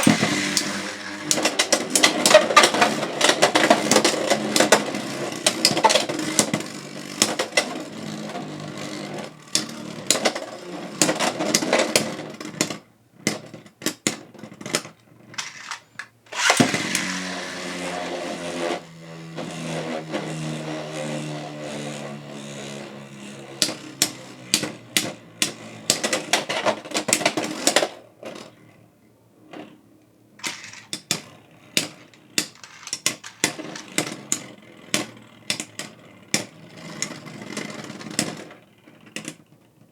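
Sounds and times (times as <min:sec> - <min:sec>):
spinning tops clacking together: 0:00.0 - 0:06.5, 0:15.4 - 0:17.9, 0:30.4 - 0:31.1, 0:32.4 - 0:34.2
spinning top whirring: 0:00.0 - 0:11.3, 0:15.4 - 0:26.3, 0:30.4 - 0:31.0, 0:32.4 - 0:34.9.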